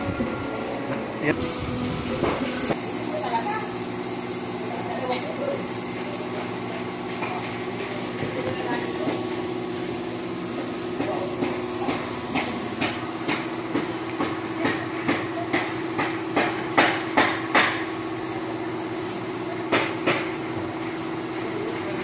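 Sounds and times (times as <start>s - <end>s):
steady machine hum: 0.0s - 19.6s
hammer strikes: 11.0s - 17.9s, 19.7s - 20.3s.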